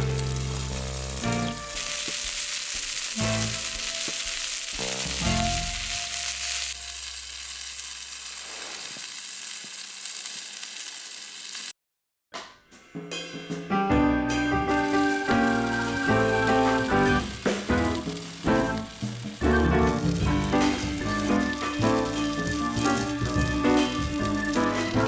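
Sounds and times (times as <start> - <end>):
background music: 0.0 - 2.4, 3.1 - 6.6, 13.4 - 25.0
meat sizzling on a griddle: 0.0 - 11.7, 14.7 - 25.0.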